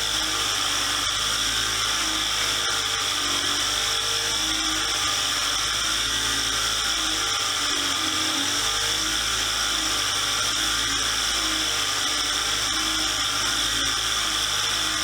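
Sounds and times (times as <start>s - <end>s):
power tool whining: 0.0s - 15.0s.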